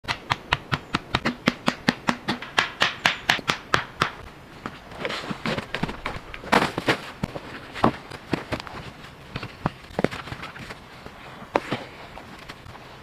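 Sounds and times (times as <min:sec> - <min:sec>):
fast sharp knocks: 0:00.1 - 0:04.2.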